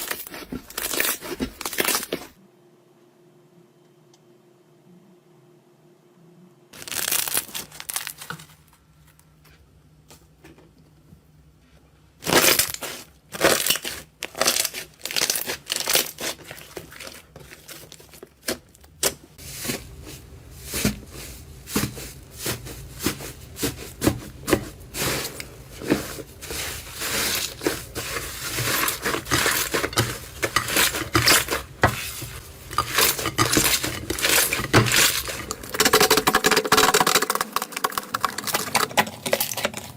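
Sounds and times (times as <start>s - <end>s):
crunchy material crushed by hand: 6.8s - 8.6s, 12.2s - 39.9s.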